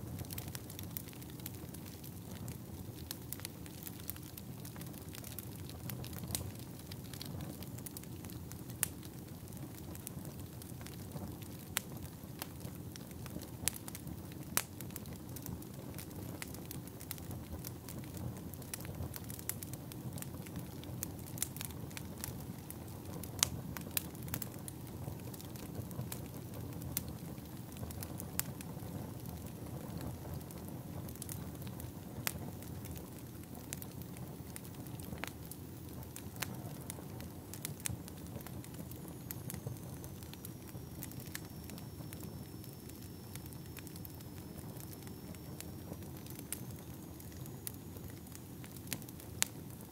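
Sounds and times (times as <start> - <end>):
fire crackling and popping: 0.0 - 49.9.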